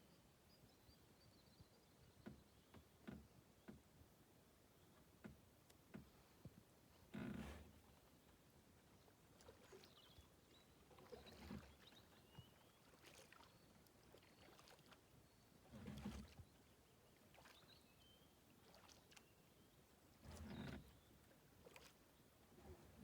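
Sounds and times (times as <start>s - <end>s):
kayak paddle swishes in water: 9.3s - 17.8s, 18.5s - 19.4s, 20.2s - 23.0s.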